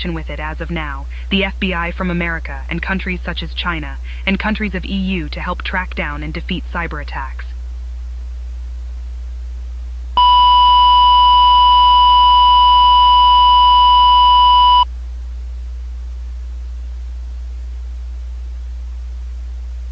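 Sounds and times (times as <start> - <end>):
constant low hum: 0.0 - 19.9
loud electronic beep tone: 10.2 - 14.8.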